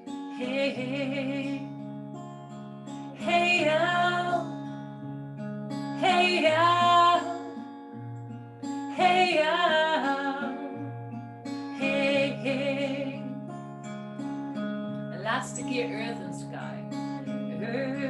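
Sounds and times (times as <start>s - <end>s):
strummed acoustic guitar: 0.0s - 18.0s.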